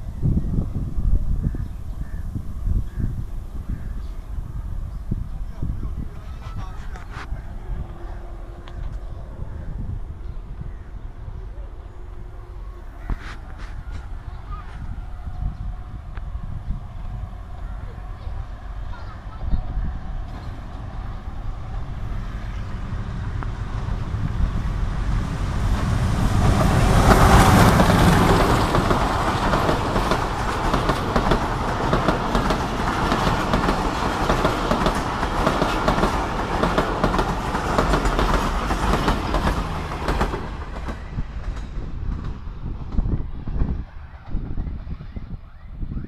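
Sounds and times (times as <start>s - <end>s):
train passing: 0.0s - 45.5s
wheels clattering over rail joints: 22.4s - 43.1s.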